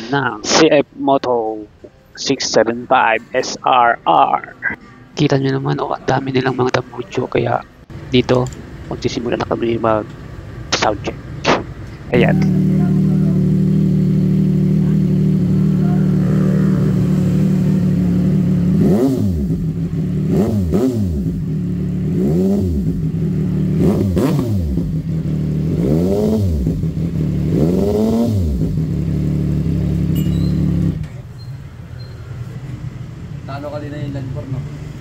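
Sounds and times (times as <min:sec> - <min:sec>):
motorcycle engine idling and revving: 0:07.8 - 0:35.0.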